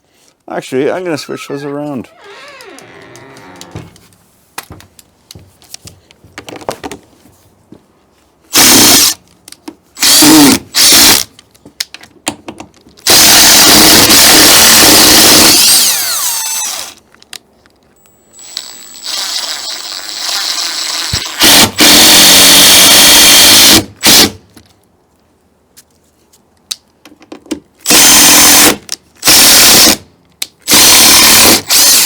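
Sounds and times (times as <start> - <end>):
power drill driving screws: 8.5 - 9.2, 10.0 - 11.3, 13.0 - 17.0, 18.4 - 24.4, 27.9 - 30.0, 30.7 - 32.0.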